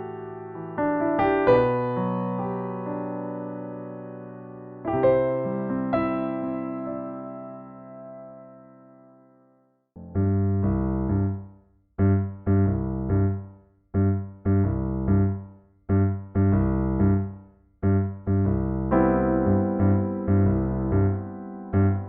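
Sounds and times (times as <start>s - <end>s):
piano playing detached chords: 10.0s - 22.0s.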